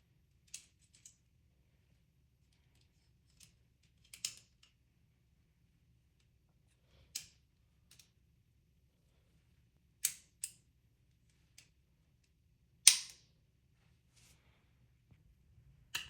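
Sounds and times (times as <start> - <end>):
plastic parts clicking together: 2.7 - 4.7.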